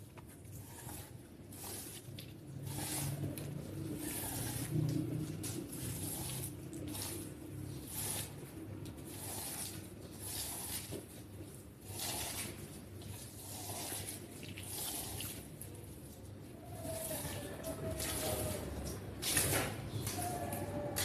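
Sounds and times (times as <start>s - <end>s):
water splashing on rug: 1.5s - 16.3s.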